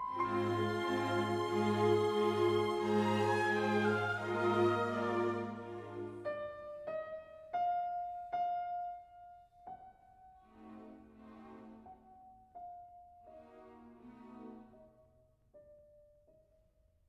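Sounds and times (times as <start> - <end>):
piano music: 0.0 - 10.0.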